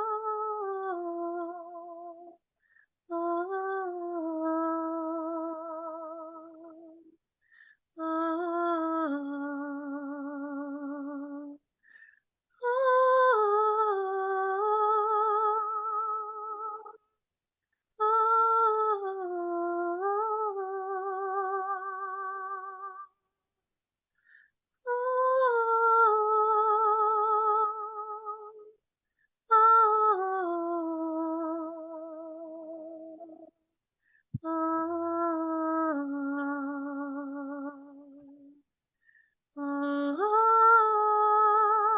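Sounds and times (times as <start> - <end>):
singer breathing: 2.6 - 3.0, 7.4 - 7.9, 11.8 - 12.3, 24.1 - 24.6, 34.0 - 34.4, 38.9 - 39.4.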